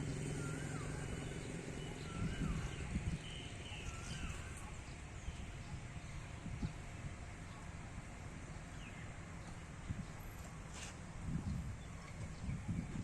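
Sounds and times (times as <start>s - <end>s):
birds chirping: 0.0s - 7.8s
low vehicle rumble: 0.0s - 13.0s
songbird whistled call: 0.1s - 4.7s.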